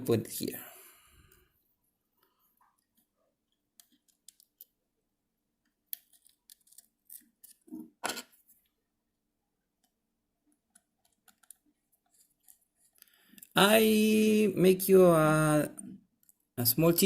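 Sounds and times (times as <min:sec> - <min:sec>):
plastic parts clicking and scraping: 0:02.6 - 0:04.8, 0:05.6 - 0:08.6, 0:09.8 - 0:13.5.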